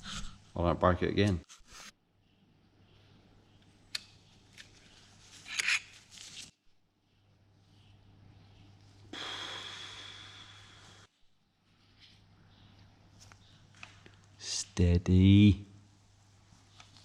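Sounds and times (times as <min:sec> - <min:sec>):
rushing hiss with high tone: 0:09.2 - 0:11.1.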